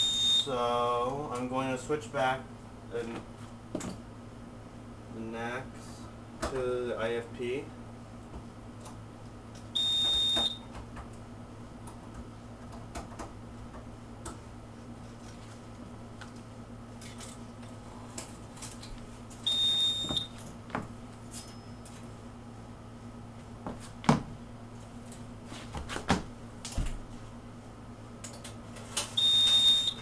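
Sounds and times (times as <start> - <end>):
high-pitched alarm panel beeps: 0.0 - 0.5, 9.8 - 10.7, 19.4 - 20.4, 29.2 - 30.0.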